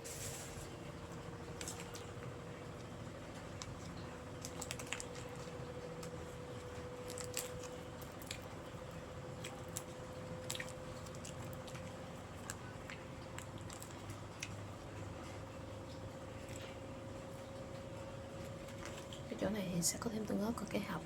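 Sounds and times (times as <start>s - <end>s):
faint steady hum: 0.0s - 21.0s
wet chewing mouth clicks: 7.0s - 14.6s.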